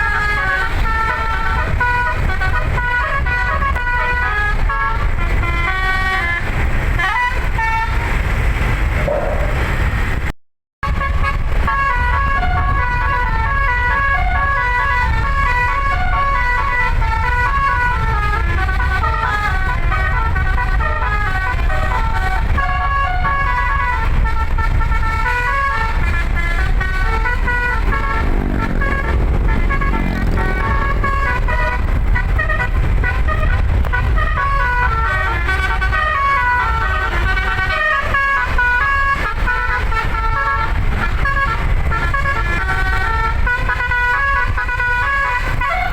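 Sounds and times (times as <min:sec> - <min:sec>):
musical air horn tune: 0:00.0 - 0:08.4, 0:10.8 - 0:45.9
low rumble: 0:26.1 - 0:34.3.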